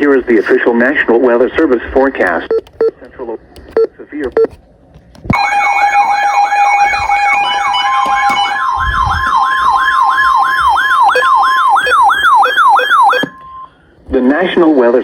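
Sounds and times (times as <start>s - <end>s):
steady alert tone: 5.3s - 13.7s
yelping siren sweep: 5.4s - 13.8s.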